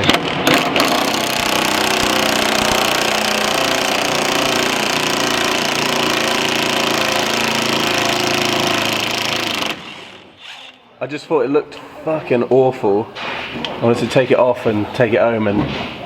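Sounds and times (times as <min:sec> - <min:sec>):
power tool whirring: 0:00.0 - 0:10.8.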